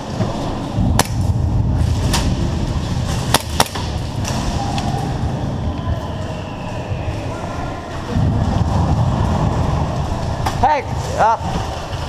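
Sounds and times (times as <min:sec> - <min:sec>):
airsoft guns firing: 0:03.2 - 0:04.0.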